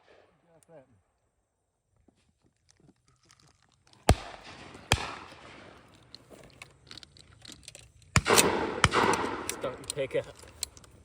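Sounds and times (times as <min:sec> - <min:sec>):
shotgun shots echoing: 0:00.0 - 0:00.6, 0:04.0 - 0:06.2, 0:08.1 - 0:10.3.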